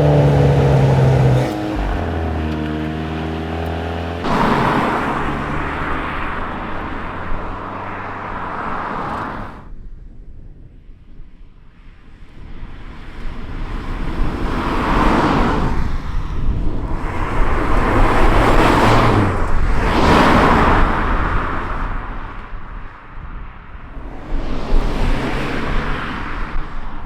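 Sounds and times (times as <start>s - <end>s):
car engine and exhaust passing by: 0.0s - 9.7s.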